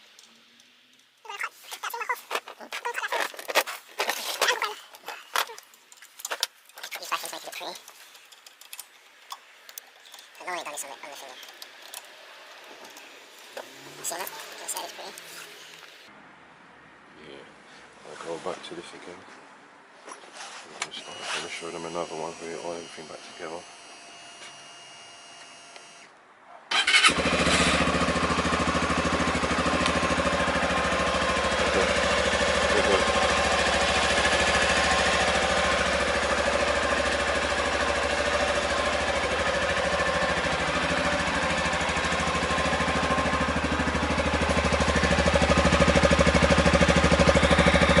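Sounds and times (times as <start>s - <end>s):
motorbike engine starting and idling: 26.7s - 48.0s.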